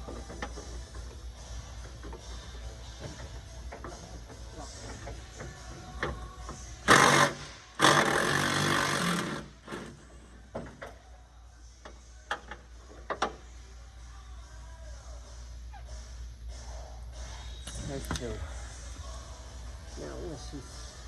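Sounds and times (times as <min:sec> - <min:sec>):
power wrench running: 0:06.8 - 0:10.0.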